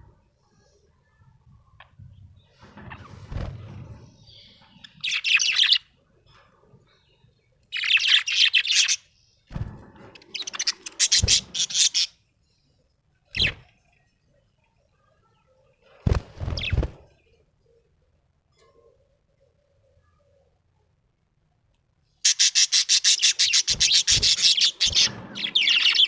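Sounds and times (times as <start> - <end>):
budgerigar chirping: 22.2 - 26.0.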